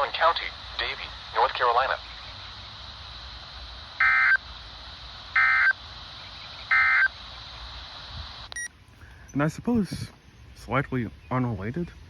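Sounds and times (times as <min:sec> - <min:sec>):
radio hiss: 0:00.0 - 0:11.0
digital data tone bursts: 0:04.0 - 0:04.4, 0:05.3 - 0:07.6.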